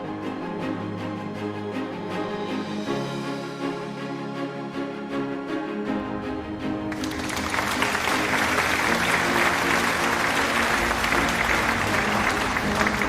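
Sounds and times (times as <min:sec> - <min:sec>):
background music: 0:00.0 - 0:13.0
applause: 0:06.9 - 0:13.0.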